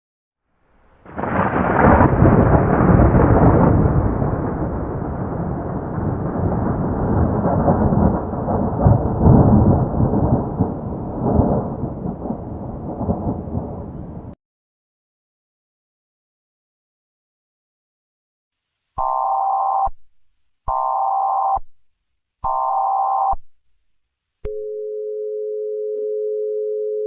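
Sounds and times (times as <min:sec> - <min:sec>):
thunder rumbling: 0:00.8 - 0:14.4.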